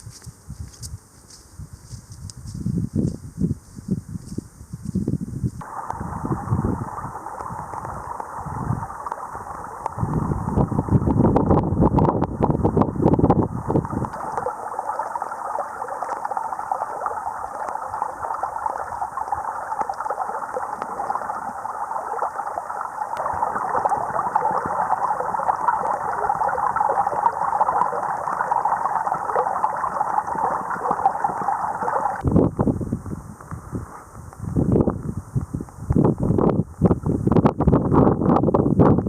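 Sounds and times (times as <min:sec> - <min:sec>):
steady rushing hiss: 0:05.6 - 0:36.2.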